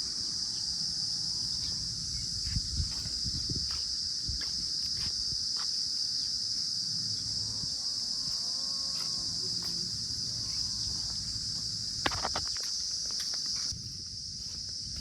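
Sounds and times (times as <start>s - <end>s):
insect chirring: 0.0s - 15.0s.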